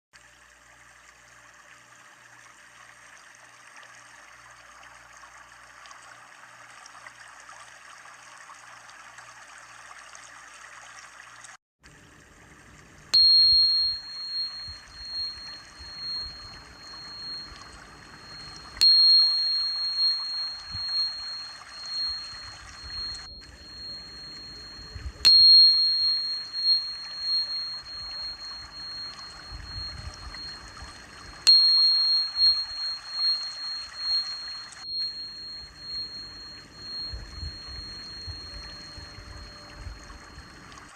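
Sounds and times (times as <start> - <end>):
small high-pitched bell ringing: 13.2 - 40.9.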